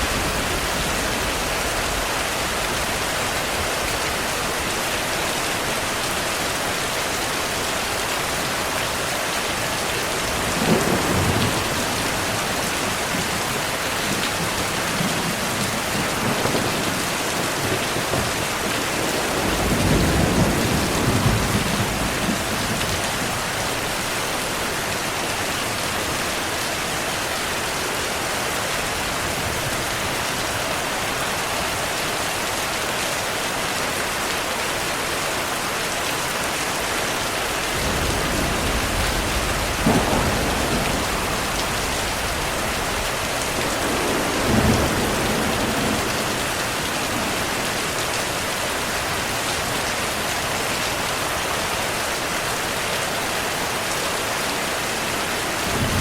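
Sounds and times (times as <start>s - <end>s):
heavy rain falling: 0.0s - 56.0s
thunder crack and rumble: 10.3s - 23.4s, 37.7s - 47.5s.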